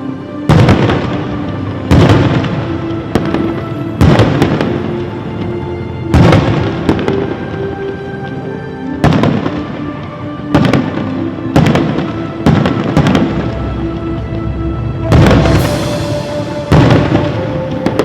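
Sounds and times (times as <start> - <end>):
background music with held notes: 0.0 - 18.0
firework booms with crackling: 0.5 - 5.0, 6.1 - 7.4, 9.0 - 9.8, 10.5 - 13.7, 15.1 - 18.0.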